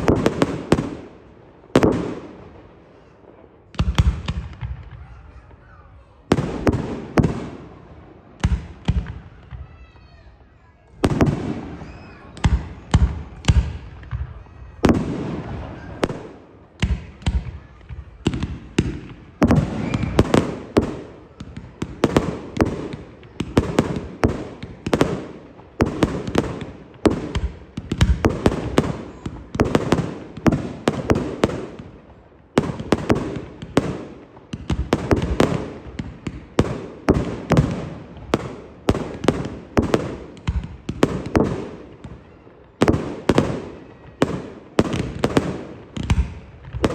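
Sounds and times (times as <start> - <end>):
fireworks booming: 0.0 - 46.9.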